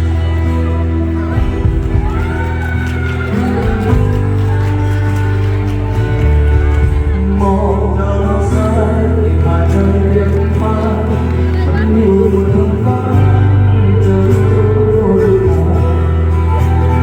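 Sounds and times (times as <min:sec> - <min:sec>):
live band music: 0:00.0 - 0:17.0
person singing: 0:00.0 - 0:17.0.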